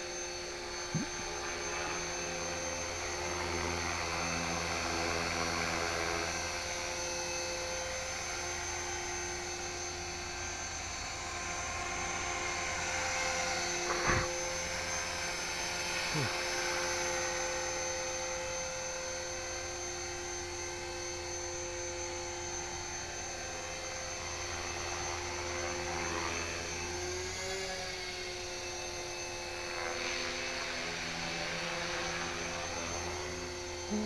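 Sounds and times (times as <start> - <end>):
rc helicopter motor whine: 0.0 - 34.0.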